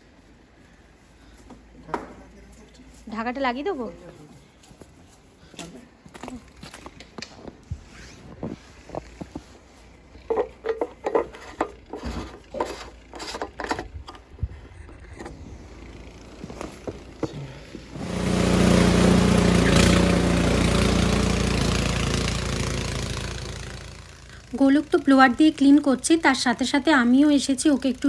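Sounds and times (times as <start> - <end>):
handling knocks and clicks: 10.2 - 15.4
snow blower engine running: 15.3 - 28.0.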